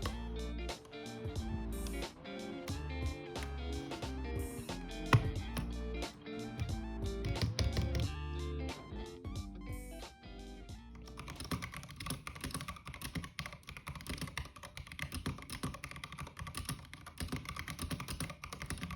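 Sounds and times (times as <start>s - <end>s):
background music: 0.0s - 12.3s
mechanical keyboard typing: 6.6s - 8.2s, 11.0s - 18.9s.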